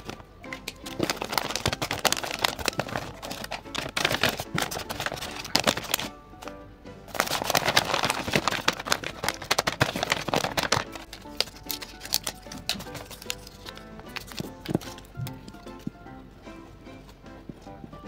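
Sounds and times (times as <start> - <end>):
paper rustling and crinkling: 0.0 - 6.1, 7.1 - 15.9
background music: 0.0 - 18.0.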